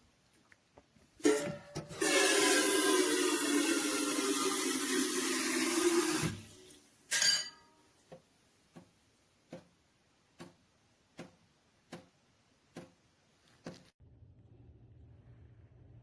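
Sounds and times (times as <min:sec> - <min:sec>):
ringing metallic clink: 0:07.1 - 0:07.8.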